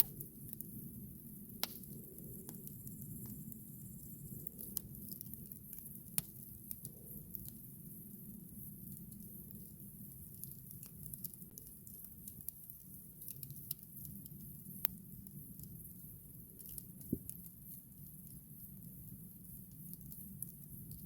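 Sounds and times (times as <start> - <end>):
loud fire snaps: 0.0 - 7.8, 8.7 - 15.8, 16.5 - 18.4
wood campfire crackling: 0.0 - 21.0.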